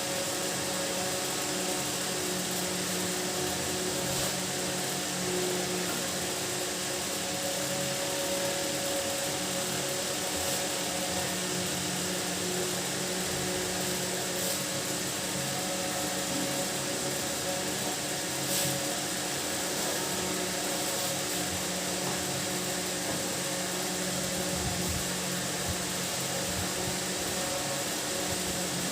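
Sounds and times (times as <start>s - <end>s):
small motor humming: 0.0s - 28.9s.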